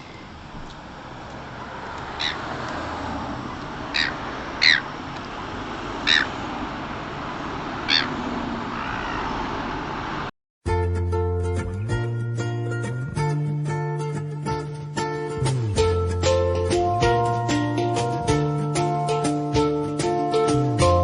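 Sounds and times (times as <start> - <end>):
seagulls calling: 2.0 - 2.5, 3.5 - 5.1, 5.8 - 6.5, 7.7 - 9.7.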